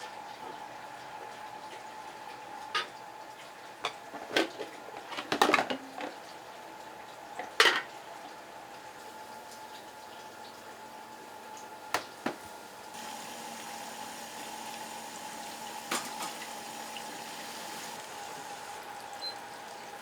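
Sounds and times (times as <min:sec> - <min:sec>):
metal pots and utensils clattering: 0:02.8 - 0:03.0, 0:03.9 - 0:06.2, 0:07.5 - 0:07.9, 0:15.8 - 0:17.1.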